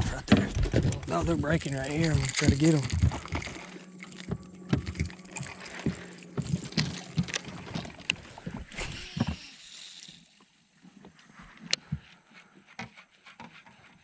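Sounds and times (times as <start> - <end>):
steady low hum: 0.0 - 10.4
gear knocking and clattering: 0.3 - 10.2.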